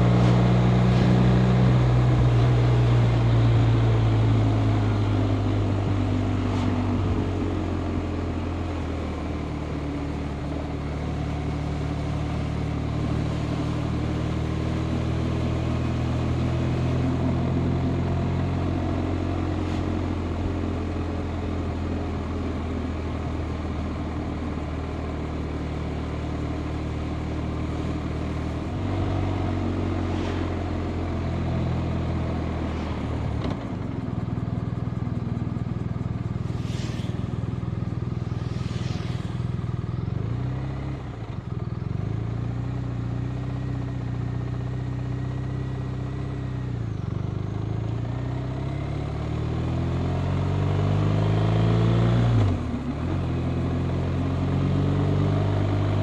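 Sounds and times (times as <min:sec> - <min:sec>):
road noise: 0:00.0 - 0:48.6
wind noise: 0:36.3 - 0:41.2.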